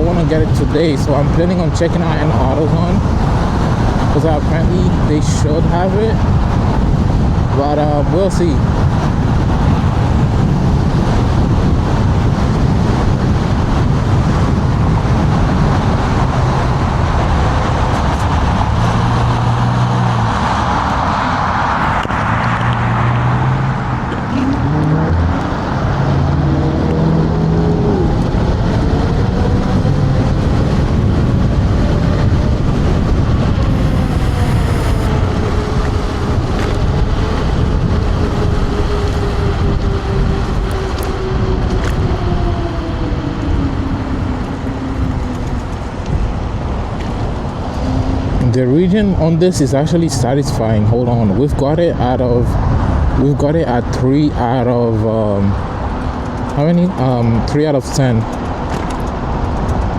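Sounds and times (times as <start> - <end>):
road noise: 0.0 - 59.9
wind rumbling on microphone: 0.0 - 59.9
faint gliding whines: 24.2 - 46.5.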